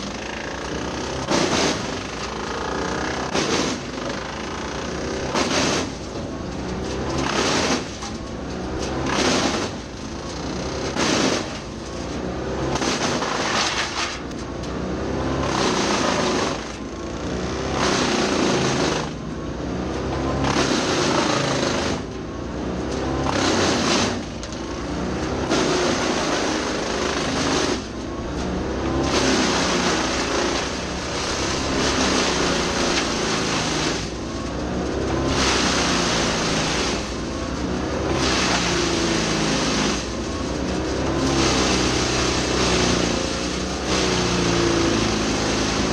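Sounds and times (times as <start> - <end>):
tractor low running hum: 0.0 - 12.8, 27.8 - 38.6
wood chipper chipping: 0.0 - 45.9.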